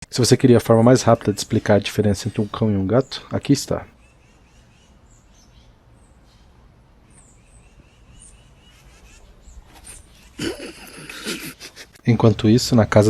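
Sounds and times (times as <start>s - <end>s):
faint background ambience: 0.0s - 13.0s
high bird chirps: 4.0s - 10.4s.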